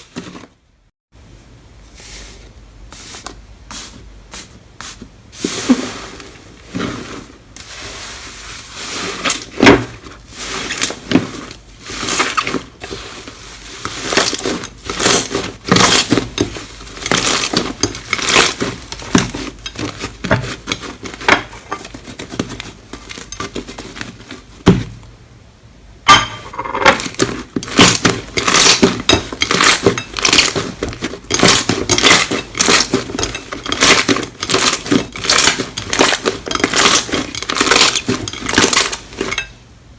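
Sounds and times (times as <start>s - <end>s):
slime crackling and popping: 27.6s - 33.2s.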